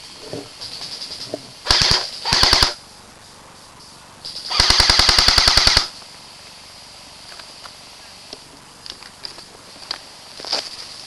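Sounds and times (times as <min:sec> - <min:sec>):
airsoft rifle firing bursts: 0:01.6 - 0:02.8, 0:04.4 - 0:05.9.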